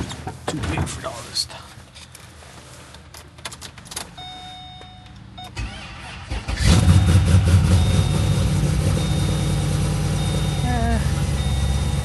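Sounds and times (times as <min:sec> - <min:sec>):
choppy car engine idling: 0:06.7 - 0:12.0.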